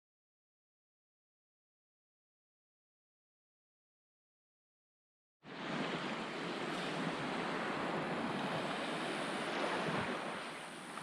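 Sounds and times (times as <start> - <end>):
ocean surf on a beach: 5.4 - 11.0
wind noise on microphone: 5.5 - 11.0.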